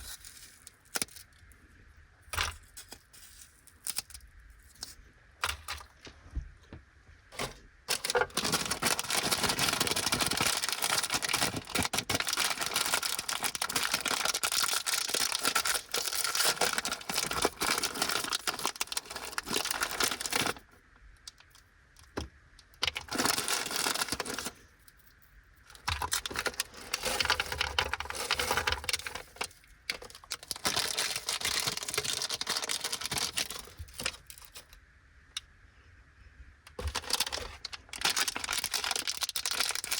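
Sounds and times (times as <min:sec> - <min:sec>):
plastic packets crinkling and tearing: 0:07.4 - 0:20.7, 0:22.8 - 0:24.6, 0:25.6 - 0:34.8, 0:36.7 - 0:39.9.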